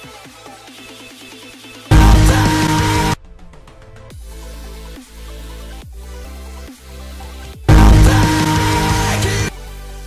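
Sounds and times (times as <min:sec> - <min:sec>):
electronic music: 0:01.9 - 0:03.2, 0:07.7 - 0:09.5.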